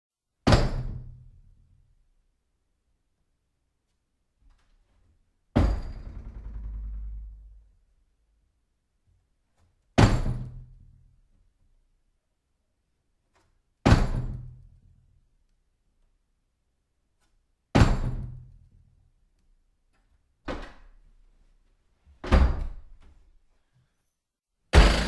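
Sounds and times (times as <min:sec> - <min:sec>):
door banging against backstop: 0:05.6 - 0:07.6, 0:24.8 - 0:25.0.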